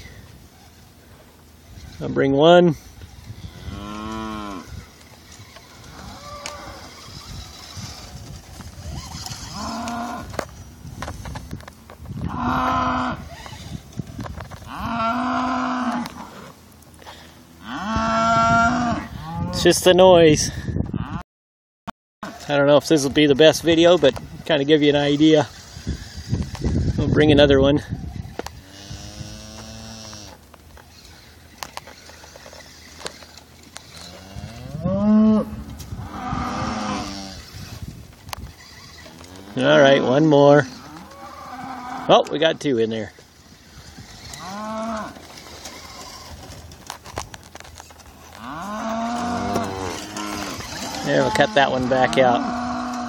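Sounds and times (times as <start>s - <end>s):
cattle mooing: 3.4s - 4.8s, 5.6s - 7.9s, 9.2s - 10.4s, 12.2s - 13.3s, 14.6s - 16.6s, 17.6s - 19.6s, 28.6s - 30.4s, 33.9s - 37.6s, 38.9s - 42.3s, 44.3s - 46.1s, 48.3s - 53.0s.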